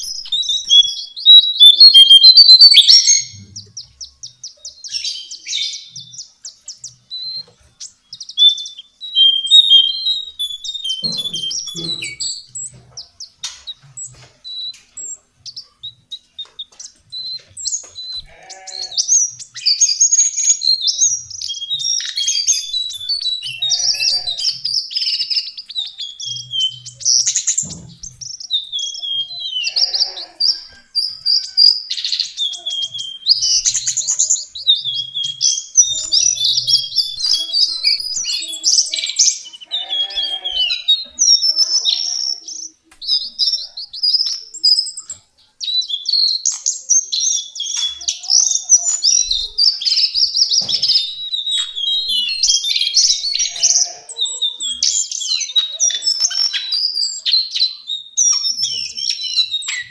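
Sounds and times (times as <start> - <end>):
bird warbling: 0.0 - 3.7, 9.2 - 13.6, 21.6 - 24.7.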